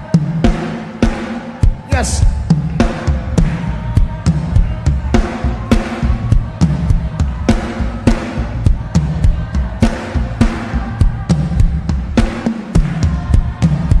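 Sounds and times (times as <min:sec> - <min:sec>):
drum kit beat: 0:00.0 - 0:14.0
bass line: 0:01.7 - 0:12.2.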